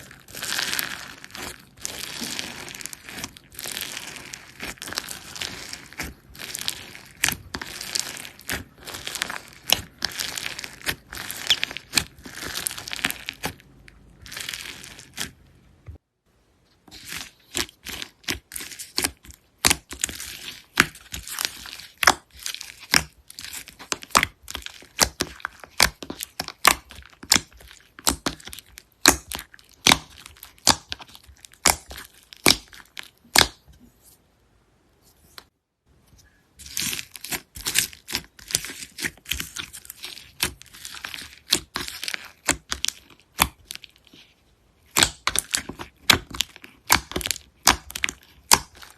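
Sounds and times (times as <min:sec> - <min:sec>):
slime crackling and squishing: 0:00.0 - 0:16.0, 0:16.8 - 0:33.7, 0:36.6 - 0:48.9.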